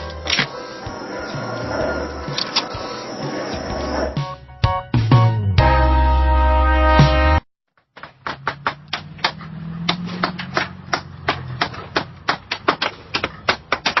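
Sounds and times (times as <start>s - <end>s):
background music: 0.0s - 7.4s.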